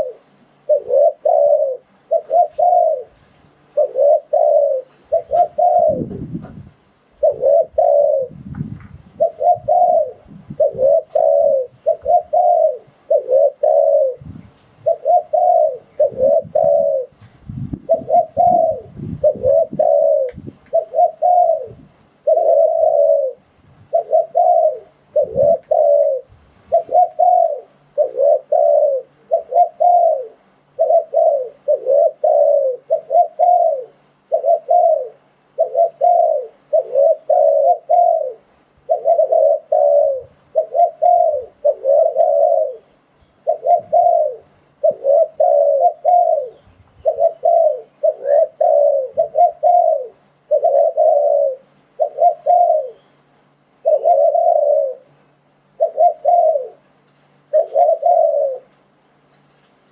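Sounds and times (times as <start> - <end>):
dove cooing: 0.0 - 53.2, 53.8 - 58.8.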